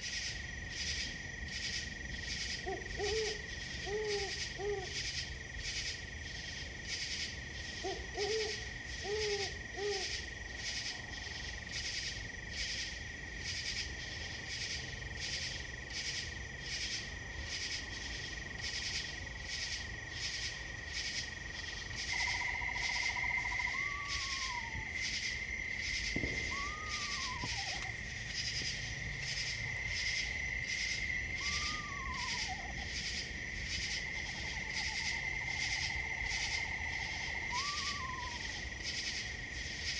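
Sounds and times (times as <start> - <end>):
insects trilling: 0.0 - 39.9
pulsing insect call: 0.0 - 39.9
longer arching calls: 2.5 - 5.2, 7.6 - 11.1, 21.5 - 38.8
owl hoots: 2.6 - 5.1, 7.8 - 10.3, 22.0 - 28.0, 30.0 - 33.0, 34.2 - 38.7.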